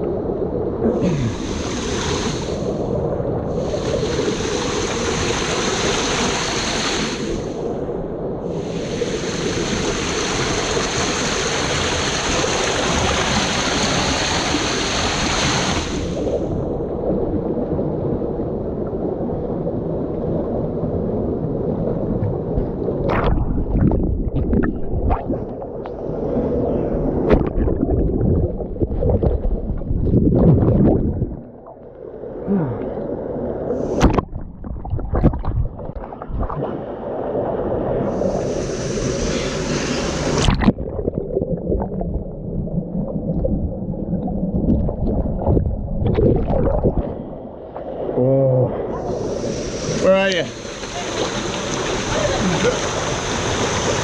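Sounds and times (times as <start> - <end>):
waterfall rushing water: 49.0 - 54.0.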